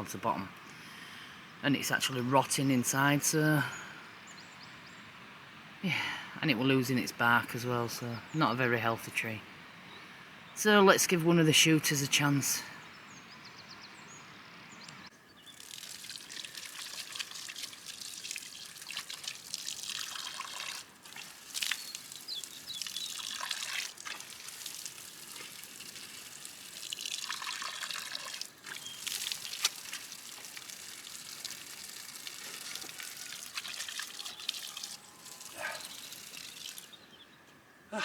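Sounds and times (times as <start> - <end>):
water running and trickling: 15.4 - 37.0.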